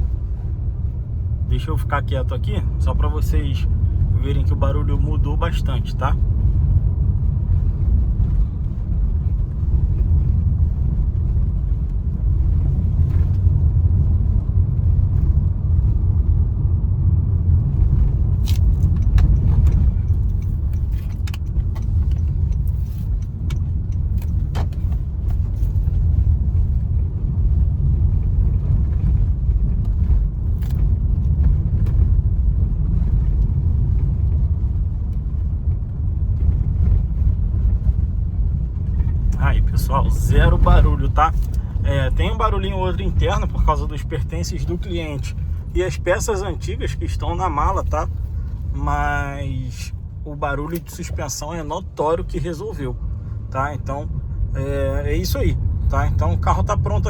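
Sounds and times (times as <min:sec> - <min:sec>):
road and tyre rumble: 0:00.0 - 0:57.0
light clicks and rattles: 0:17.9 - 0:26.9.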